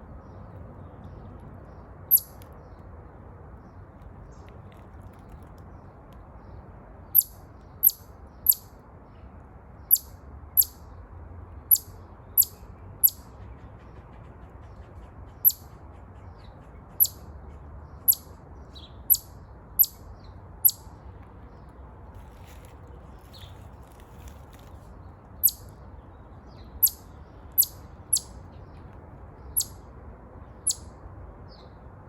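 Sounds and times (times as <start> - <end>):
faint steady background noise: 0.0 - 32.0
chipmunk chip calls: 2.1 - 2.5, 7.1 - 8.8, 9.8 - 10.8, 11.7 - 13.3, 15.3 - 17.3, 17.9 - 21.0, 25.4 - 25.8, 26.4 - 29.8, 30.6 - 31.0.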